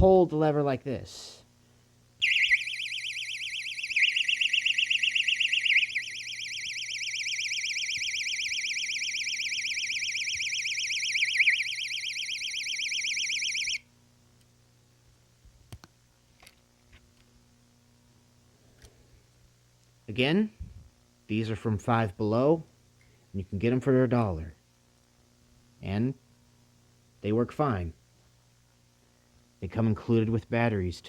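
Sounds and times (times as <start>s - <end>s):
warbling electronic alarm siren: 2.2s - 13.8s.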